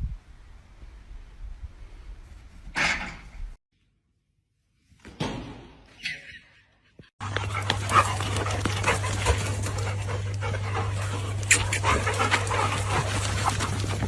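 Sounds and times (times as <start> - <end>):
dog panting: 7.2 - 14.0
steady low hum: 7.2 - 14.0.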